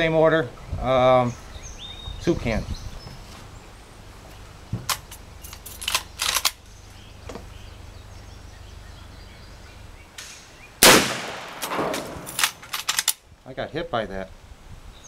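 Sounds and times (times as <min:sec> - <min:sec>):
loud gunshot with echo: 0:10.8 - 0:12.3.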